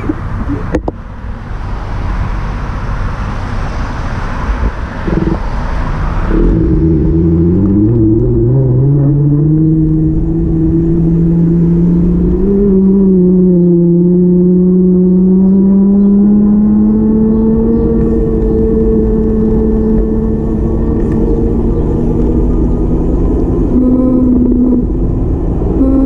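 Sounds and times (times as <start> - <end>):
steady low rumble: 4.4 - 13.8, 16.9 - 26.0
vehicle engine running: 4.4 - 26.0.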